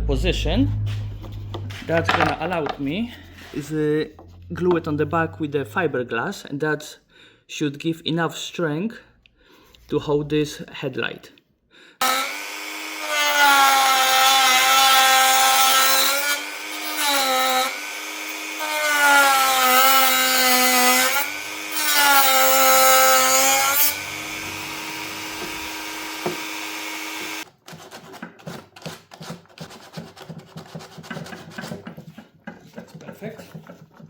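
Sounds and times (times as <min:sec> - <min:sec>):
faint scraping and handling: 0:00.8 - 0:04.6
power tool cutting plastic: 0:12.0 - 0:28.4.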